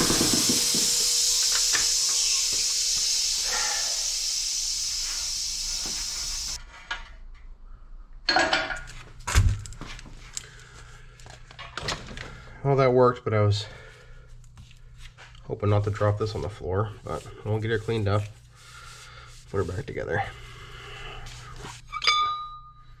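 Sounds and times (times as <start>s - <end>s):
steady hiss: 0.0s - 6.6s.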